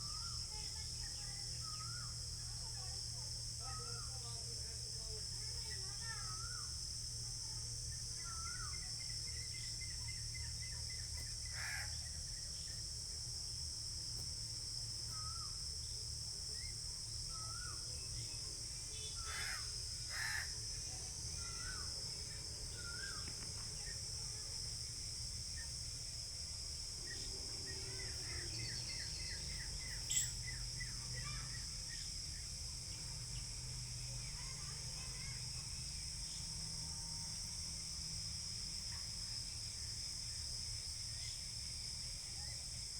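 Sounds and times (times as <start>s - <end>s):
insects droning: 0.0s - 42.9s
crows cawing: 11.6s - 11.9s, 19.2s - 20.5s
small birds chirping: 27.0s - 33.1s.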